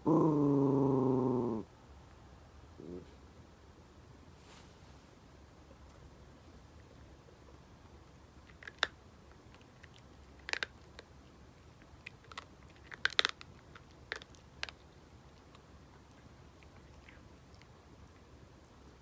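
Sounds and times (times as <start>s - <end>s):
dog crunching treats: 8.4s - 19.0s.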